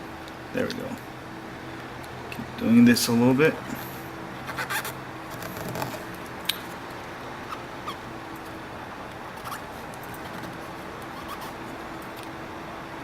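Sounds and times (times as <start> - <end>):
steady low hum: 0.0 - 13.0
squeaks rubbing screen protector: 4.5 - 6.0, 9.4 - 11.6.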